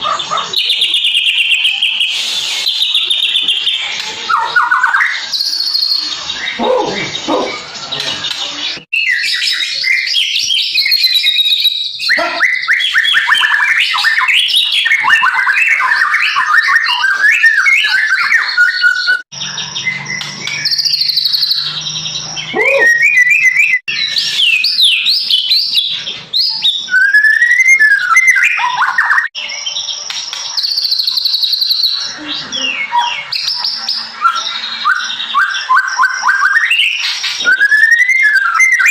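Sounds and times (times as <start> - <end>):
bird singing whistles and trills: 0.0 - 38.9.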